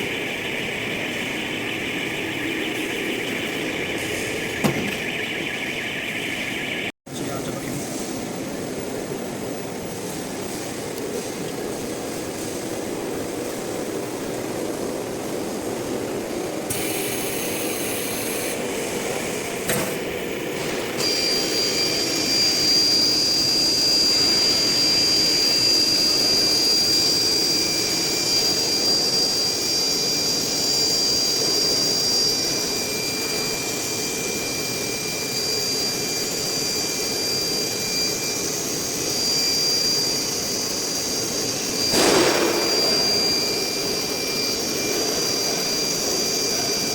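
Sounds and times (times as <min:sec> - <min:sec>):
high spindle whine: 0:00.0 - 0:46.9.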